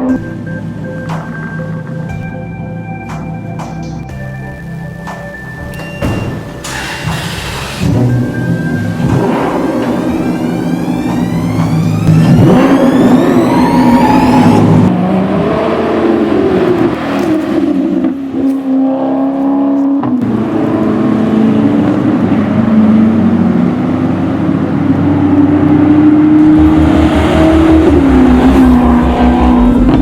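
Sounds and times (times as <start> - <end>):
loud car engine revving: 6.6 - 30.0.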